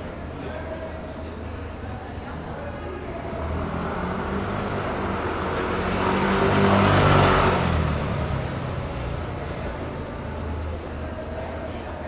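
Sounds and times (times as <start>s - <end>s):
street traffic: 0.0s - 12.0s
vehicle passing close by: 3.4s - 9.5s.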